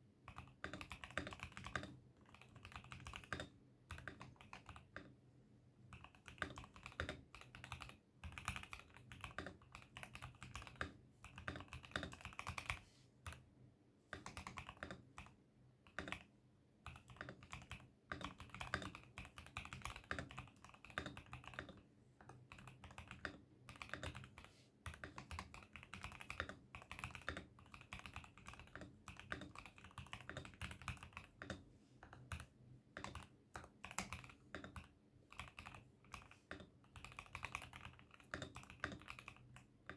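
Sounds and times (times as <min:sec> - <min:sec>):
mechanical keyboard typing: 0:00.3 - 0:05.1, 0:05.9 - 0:13.4, 0:14.2 - 0:39.9.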